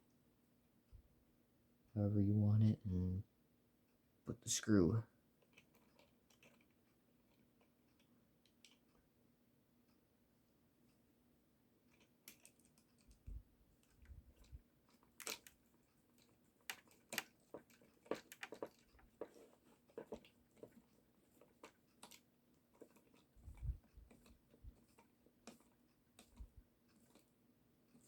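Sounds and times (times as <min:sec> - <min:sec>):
plastic parts handled: 0:05.4 - 0:07.5, 0:11.9 - 0:27.3.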